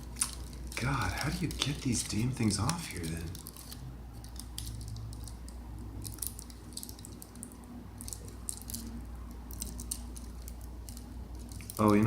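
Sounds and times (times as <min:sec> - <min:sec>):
foil crinkles and ticks: 0:00.0 - 0:12.0
steady low hum: 0:00.0 - 0:12.0.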